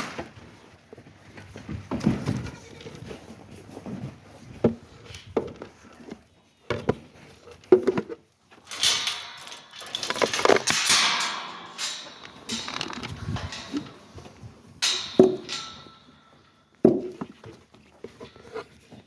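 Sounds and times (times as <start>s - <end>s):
feed rattling and rustling: 1.4s - 19.0s
knocks and clatters: 6.7s - 19.0s.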